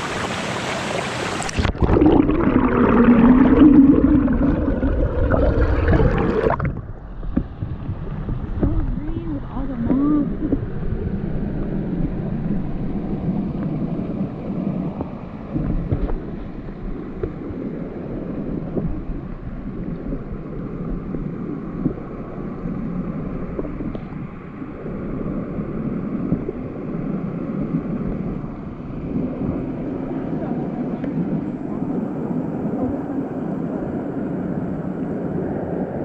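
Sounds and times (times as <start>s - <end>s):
river water rushing: 0.0s - 6.6s
wind buffeting microphone: 1.8s - 17.6s.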